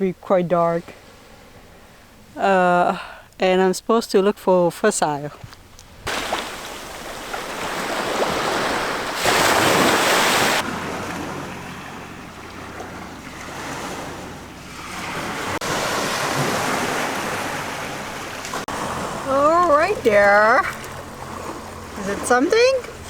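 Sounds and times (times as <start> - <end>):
surf on rocky shore: 5.8 - 23.0.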